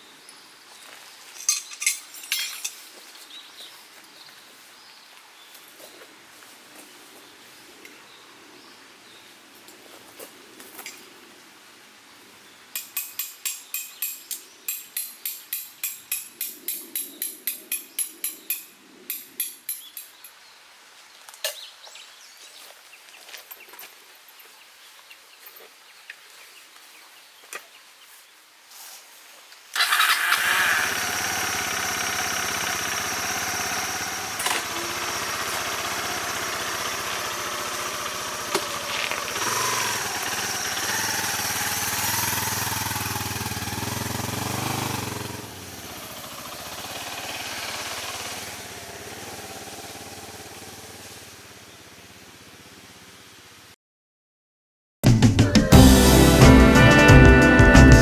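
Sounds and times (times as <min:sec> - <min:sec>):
motorcycle engine starting and running: 0:29.8 - 0:53.7, 0:55.7 - 0:58.0.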